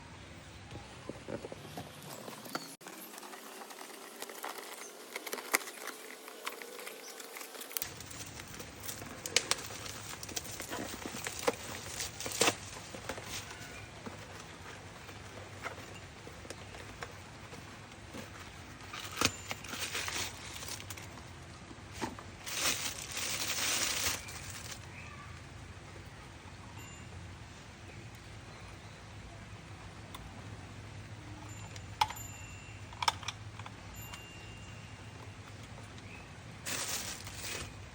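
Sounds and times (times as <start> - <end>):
rustling: 1.1 - 25.4, 36.6 - 37.9.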